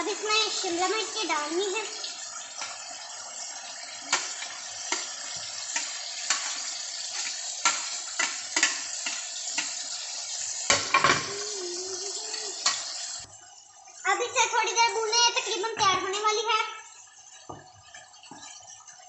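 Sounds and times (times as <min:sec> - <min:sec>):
food sizzling in a pan: 0:00.0 - 0:17.7
spoon scraping metal pan: 0:04.1 - 0:11.3, 0:12.4 - 0:13.2.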